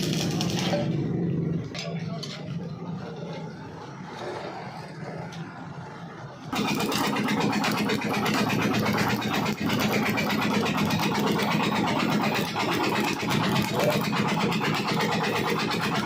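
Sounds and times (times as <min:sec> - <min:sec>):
welding arc crackling: 0:00.0 - 0:01.1, 0:06.5 - 0:16.0.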